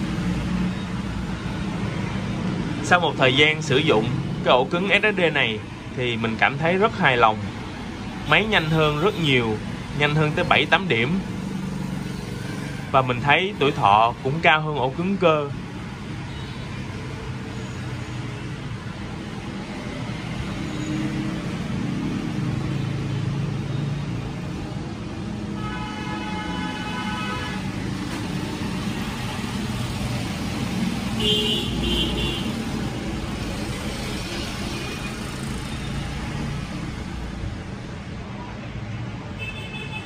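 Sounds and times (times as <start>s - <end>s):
road traffic: 0.0s - 40.0s
vehicle horn honking: 25.6s - 27.7s, 31.2s - 32.6s.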